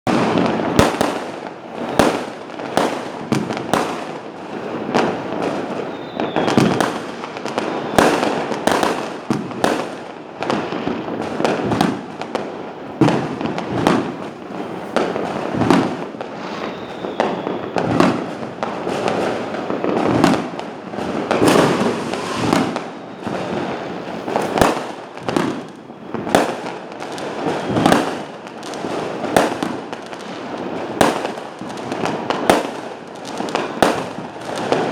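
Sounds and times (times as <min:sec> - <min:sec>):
fireworks bursting with bangs: 0:00.1 - 0:34.9
fireworks crackling: 0:00.1 - 0:34.9
faint falling whistle: 0:05.9 - 0:07.0, 0:16.4 - 0:18.0, 0:22.4 - 0:26.3.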